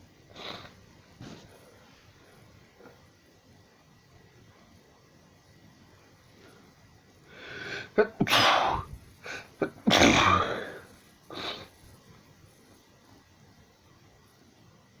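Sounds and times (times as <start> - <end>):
person sneezing: 7.6 - 11.7.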